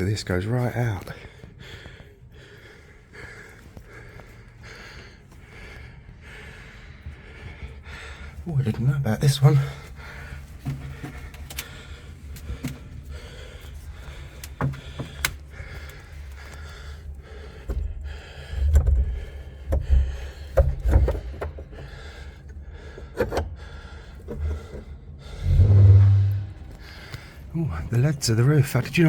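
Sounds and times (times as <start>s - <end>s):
man breathing hard: 1.0s - 8.5s, 9.6s - 27.5s
climbing knocks and clicks: 9.5s - 26.9s
low rumbling: 23.8s - 28.0s.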